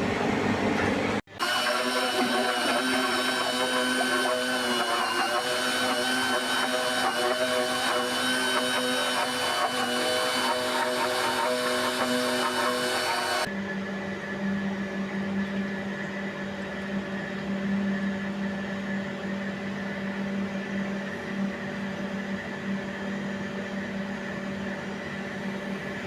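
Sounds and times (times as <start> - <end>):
small electric motor humming: 1.3 - 13.5.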